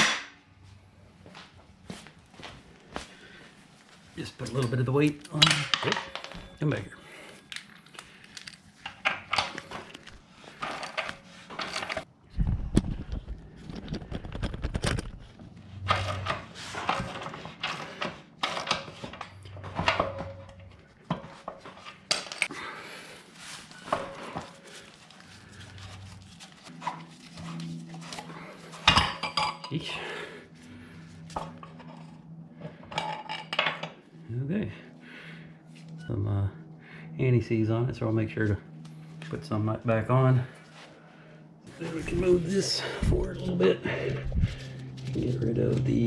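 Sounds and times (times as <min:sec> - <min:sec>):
metal clinks and scrapes: 0:07.4 - 0:12.1
low rumble: 0:41.8 - 0:46.0.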